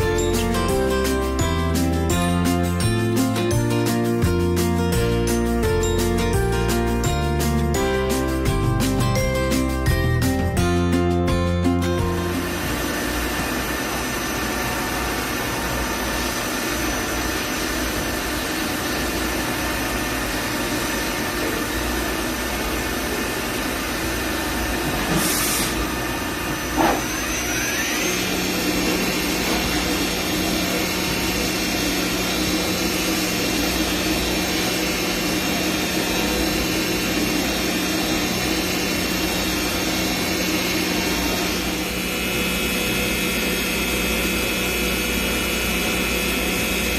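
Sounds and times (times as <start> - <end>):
milling machine spindle whine: 12.1 - 46.9
air hiss: 25.1 - 25.9.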